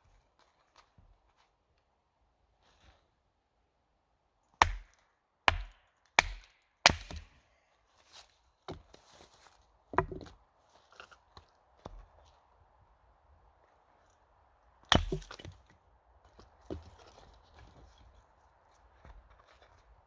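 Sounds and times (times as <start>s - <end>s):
wood being chopped: 4.6s - 7.4s, 9.9s - 10.3s, 14.9s - 15.6s.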